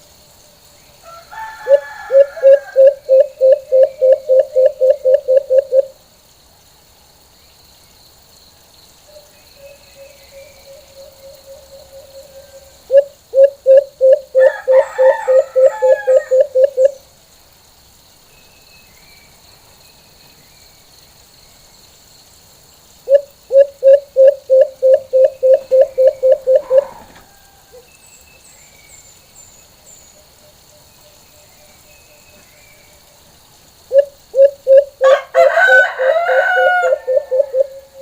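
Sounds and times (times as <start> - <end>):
dove hooting: 1.6 - 6.0, 9.7 - 17.0, 23.1 - 27.2, 33.9 - 38.0.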